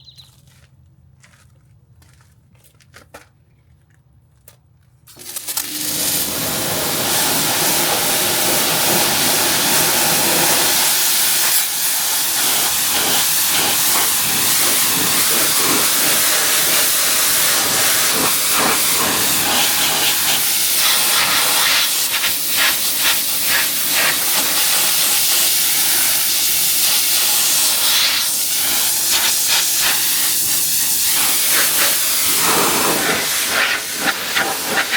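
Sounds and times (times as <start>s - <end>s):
pressure washer spraying a car: 5.1s - 34.9s.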